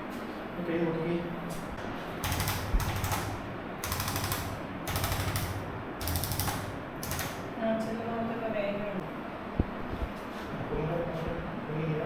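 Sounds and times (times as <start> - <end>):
mechanical ratchet clicking: 2.2 - 7.5.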